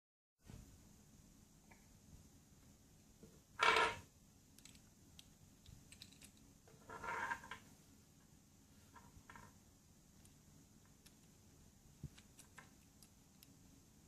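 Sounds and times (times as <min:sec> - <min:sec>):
small metal parts clicking: 0:04.6 - 0:06.5, 0:12.2 - 0:13.6.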